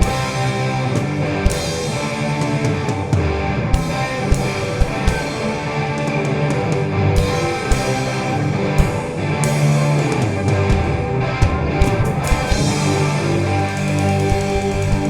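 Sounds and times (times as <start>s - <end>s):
distorted electric guitar: 0.0s - 15.0s
drums: 0.0s - 15.0s.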